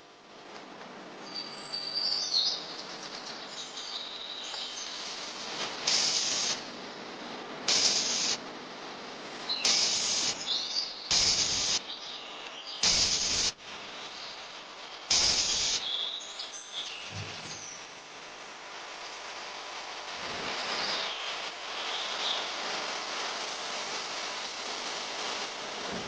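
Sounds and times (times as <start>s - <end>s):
steady background hiss: 0.0s - 26.0s
short hissing bursts: 4.5s - 6.7s, 7.6s - 8.4s, 9.5s - 11.8s, 12.8s - 13.6s, 15.0s - 16.0s.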